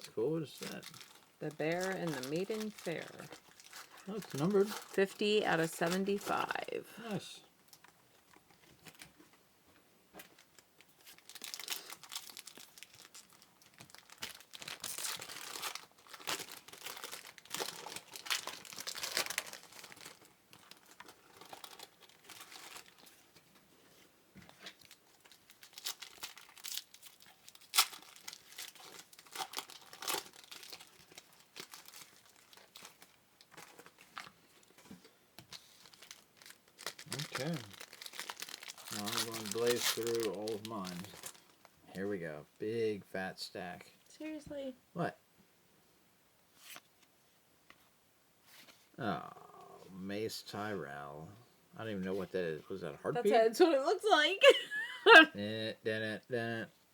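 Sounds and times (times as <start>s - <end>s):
wrappers tearing and crinkling: 0.5s - 6.7s, 7.7s - 9.2s, 10.2s - 23.4s, 24.5s - 41.7s
cards shuffling and rustling: 32.8s - 41.3s, 46.6s - 46.9s.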